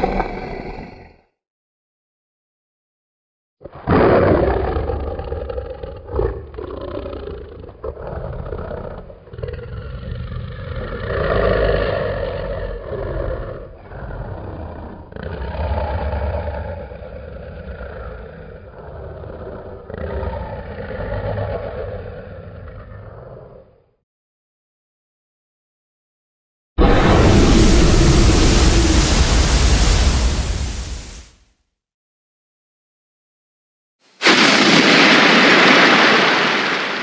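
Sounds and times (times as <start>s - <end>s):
dragon roar: 0.0s - 1.2s, 3.7s - 23.9s, 26.8s - 31.3s.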